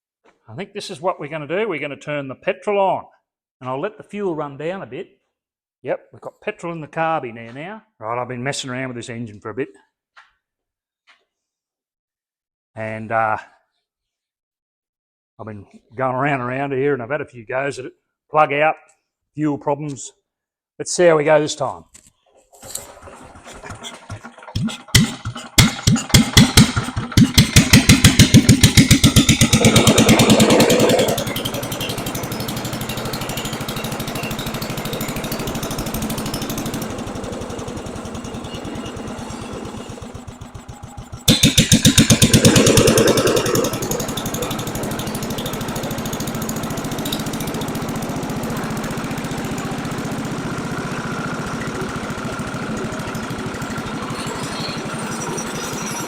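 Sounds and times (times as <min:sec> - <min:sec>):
petrol engine running: 0:23.0 - 0:56.0.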